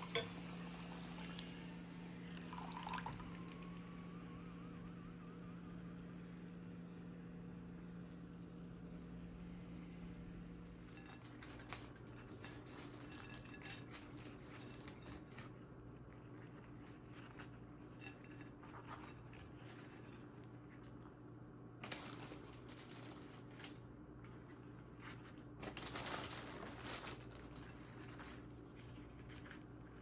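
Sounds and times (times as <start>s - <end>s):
kitchen utensils and dishes clicking: 0.0s - 0.5s
low steady hum: 0.0s - 30.0s.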